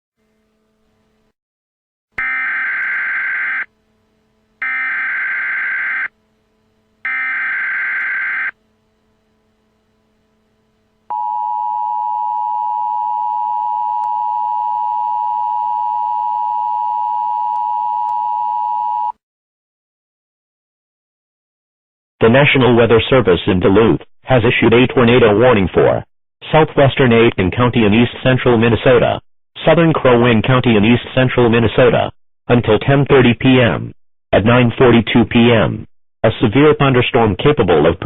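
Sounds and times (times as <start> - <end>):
two-tone alert signal: 2.2 - 3.7.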